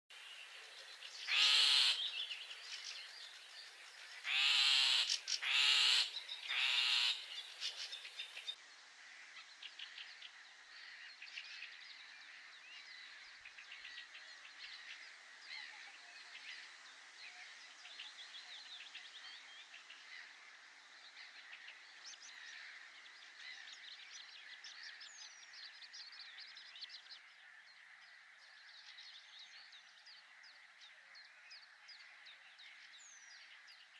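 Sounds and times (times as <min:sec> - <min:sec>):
many birds chirping: 0:00.1 - 0:08.6, 0:09.8 - 0:33.9
loud pitched animal calls: 0:01.3 - 0:02.1, 0:04.3 - 0:07.3.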